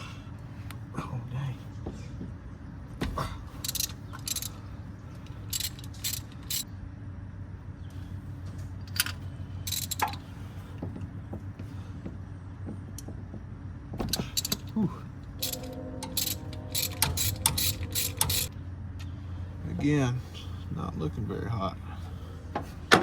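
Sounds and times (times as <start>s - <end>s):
steady low hum: 0.0s - 23.0s
metal tools clinking and scraping: 3.6s - 4.6s, 5.2s - 6.6s, 8.9s - 10.2s, 14.1s - 14.8s, 15.4s - 18.5s.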